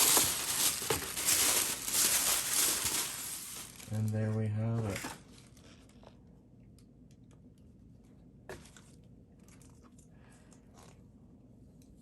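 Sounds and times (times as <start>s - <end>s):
packaging rustling: 0.0s - 6.1s.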